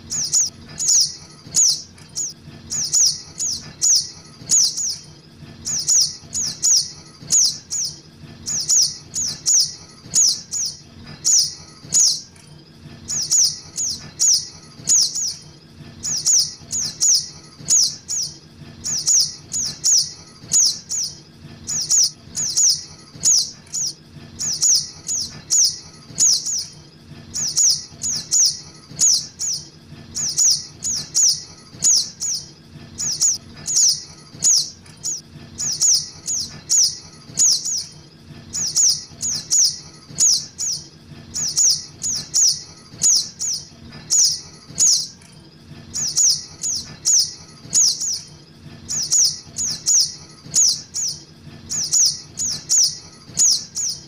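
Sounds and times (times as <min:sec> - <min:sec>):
young birds chipping: 0:00.0 - 0:45.2, 0:45.9 - 0:54.0.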